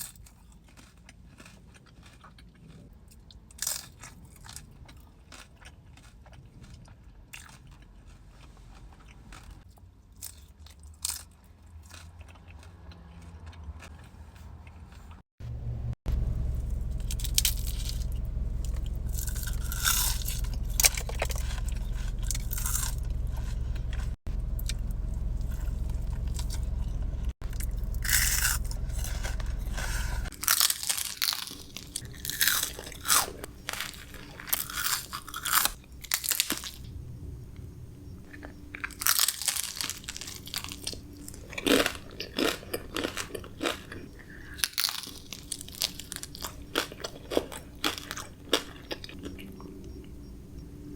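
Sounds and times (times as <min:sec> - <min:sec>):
crunching and chewing food: 0:00.0 - 0:15.3, 0:16.1 - 0:50.9
low hum: 0:15.4 - 0:42.1, 0:44.1 - 0:50.9.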